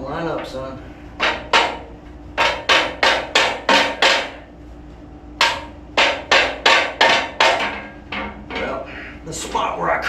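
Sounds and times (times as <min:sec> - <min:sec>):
hammer striking metal: 0:01.2 - 0:04.5, 0:05.4 - 0:08.9.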